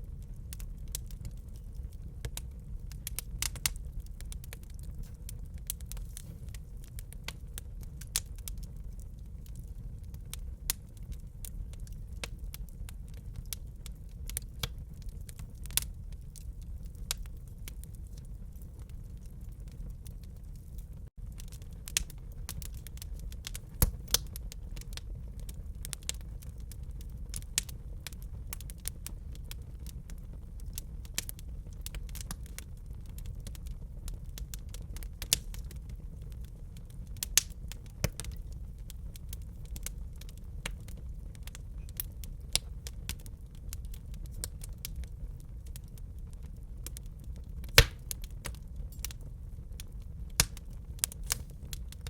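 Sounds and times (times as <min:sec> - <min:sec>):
fire crackling and popping: 0:00.0 - 0:52.0
low rumble of flames: 0:00.0 - 0:52.0.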